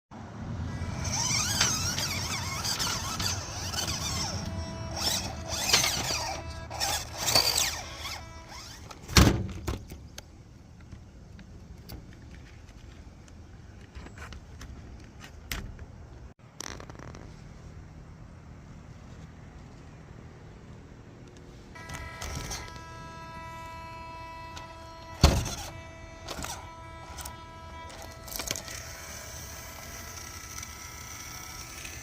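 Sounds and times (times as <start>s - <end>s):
electric motor and gears whining: 0.4s - 9.9s, 21.7s - 32.0s.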